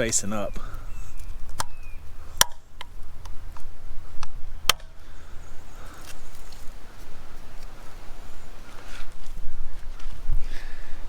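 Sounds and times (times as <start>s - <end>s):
sharp plastic snaps: 2.4s - 5.0s.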